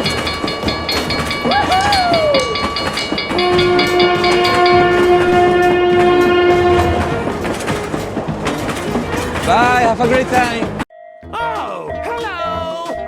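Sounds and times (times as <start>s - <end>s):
train rumbling: 0.0s - 10.9s
crossing bell clanging: 0.0s - 13.0s
train horn: 3.3s - 7.3s.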